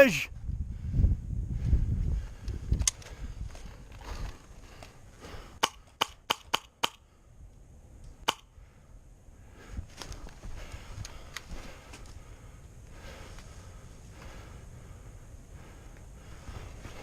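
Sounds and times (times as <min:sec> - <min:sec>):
rustling of gear: 0:02.4 - 0:05.2, 0:09.8 - 0:12.2
airsoft gun pops: 0:05.6 - 0:07.0.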